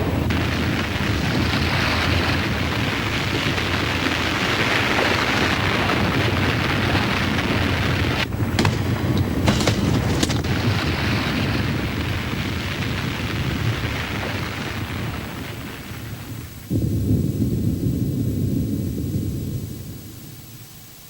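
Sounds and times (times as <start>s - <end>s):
deep rumble with hiss: 0.0s - 21.0s
sharp crashes: 8.4s - 11.9s.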